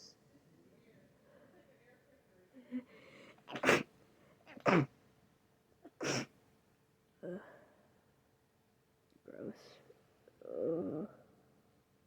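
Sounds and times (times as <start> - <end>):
person sneezing: 3.5 - 3.9, 4.6 - 4.9, 6.0 - 6.3.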